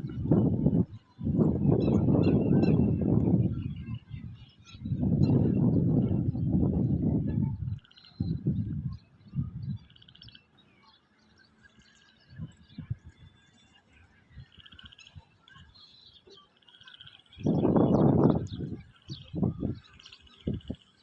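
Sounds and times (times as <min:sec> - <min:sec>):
wind buffeting microphone: 0:00.0 - 0:10.4, 0:12.2 - 0:15.8, 0:17.3 - 0:21.0
small birds chirping and trilling: 0:00.0 - 0:21.0.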